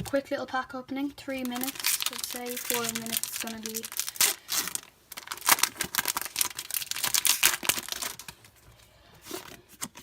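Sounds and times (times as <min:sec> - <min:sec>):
foil wrapper crinkling and tearing: 0:01.4 - 0:08.5.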